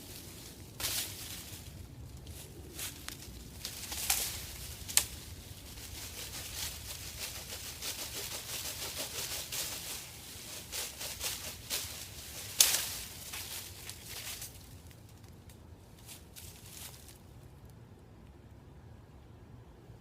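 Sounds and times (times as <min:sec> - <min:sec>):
dry twigs and leaves crackling: 0:00.0 - 0:17.8
twig snapping: 0:03.0 - 0:05.2.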